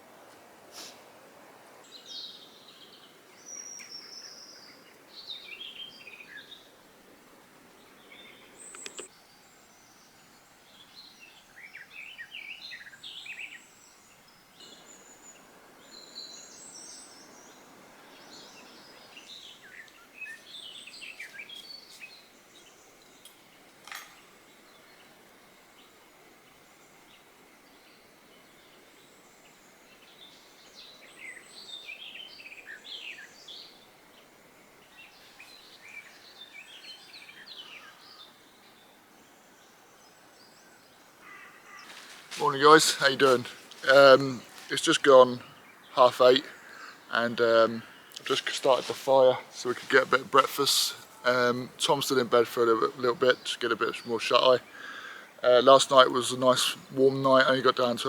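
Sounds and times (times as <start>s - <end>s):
songbirds chirping and trilling: 0.0s - 58.0s
sharp clicks: 8.7s - 9.1s.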